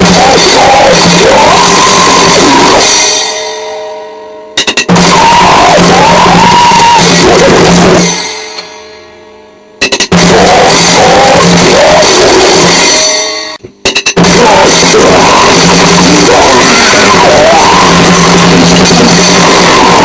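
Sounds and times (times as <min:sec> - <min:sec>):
distorted noise music: 0:00.0 - 0:20.0
drum count-in clicks: 0:04.6 - 0:05.2, 0:09.8 - 0:13.0, 0:13.6 - 0:16.2.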